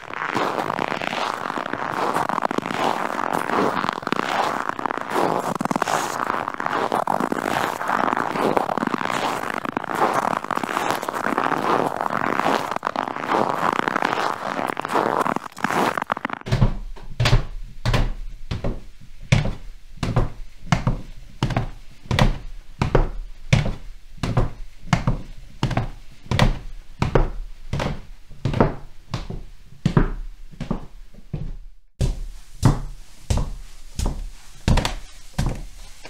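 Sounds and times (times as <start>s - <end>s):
footsteps climbing stairs: 16.4s - 36.0s.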